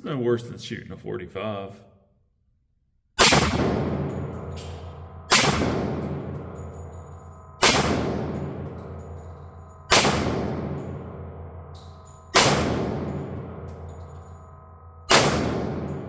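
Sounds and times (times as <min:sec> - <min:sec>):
pistol shots echoing: 0:03.2 - 0:14.3, 0:15.1 - 0:16.0.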